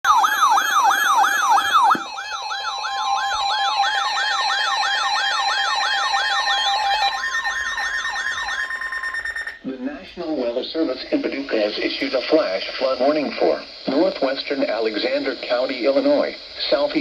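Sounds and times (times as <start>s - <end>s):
electronic siren yelping: 0.0s - 9.7s
steady electronic tones: 0.0s - 10.6s.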